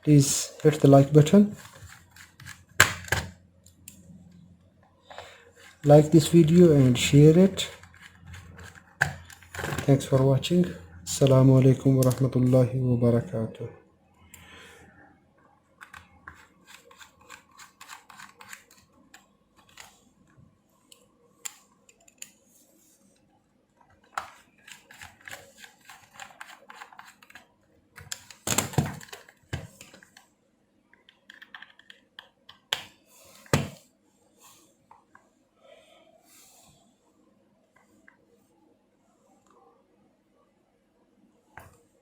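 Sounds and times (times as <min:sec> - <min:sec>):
plastic controller and tools handled: 0:00.1 - 0:03.4, 0:05.1 - 0:10.8, 0:11.6 - 0:12.4, 0:15.8 - 0:20.0, 0:23.9 - 0:30.2, 0:31.0 - 0:33.8.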